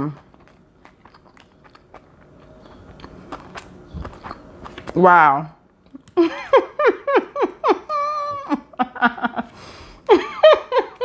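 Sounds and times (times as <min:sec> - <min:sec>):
quick breath: 0:09.5 - 0:10.1.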